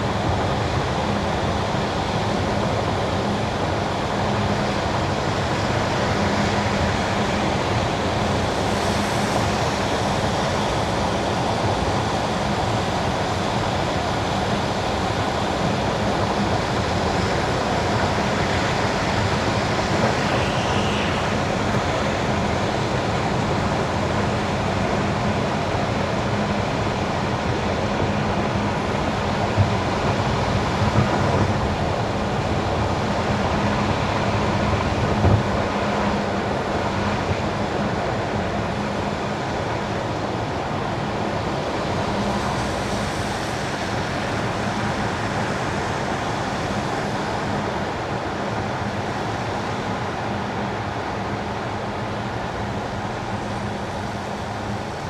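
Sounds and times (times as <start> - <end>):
car tyres hissing on wet asphalt: 3.9 - 25.0, 41.0 - 55.0.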